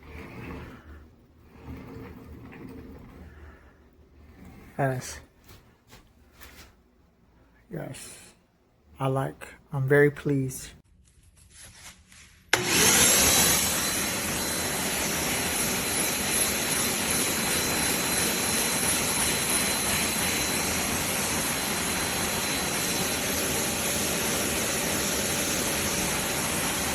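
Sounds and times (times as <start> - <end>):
shop vacuum running: 0.0 - 6.6, 12.5 - 26.9.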